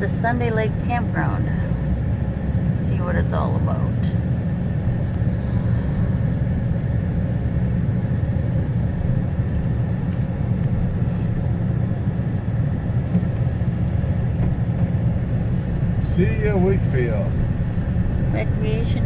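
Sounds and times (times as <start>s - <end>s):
truck engine and tyre rumble: 0.0s - 19.0s.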